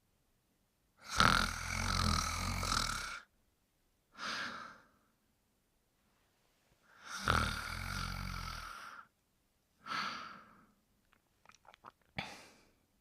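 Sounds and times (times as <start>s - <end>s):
person snoring: 1.0s - 3.3s, 7.0s - 9.1s.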